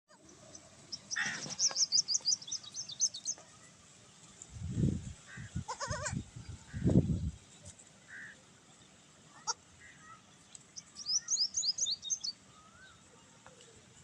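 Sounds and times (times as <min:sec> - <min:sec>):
small birds twittering: 0:00.1 - 0:04.3, 0:08.1 - 0:14.0
baby goat bleating: 0:05.7 - 0:06.2.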